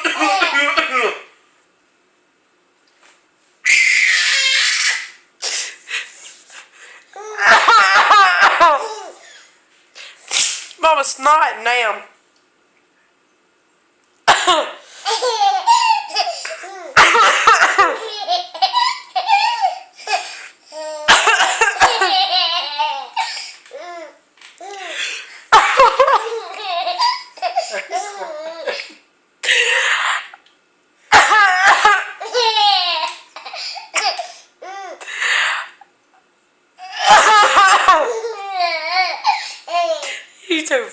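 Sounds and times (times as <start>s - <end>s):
baby laughing: 0.0s - 1.2s, 7.2s - 9.4s, 15.0s - 25.0s, 25.6s - 29.0s, 31.2s - 35.0s, 36.9s - 40.2s
woman coughing: 0.0s - 1.3s, 7.4s - 9.4s, 14.3s - 14.8s, 16.2s - 18.1s, 21.0s - 22.1s, 25.5s - 26.2s, 27.5s - 30.4s, 31.1s - 32.3s, 37.0s - 38.4s.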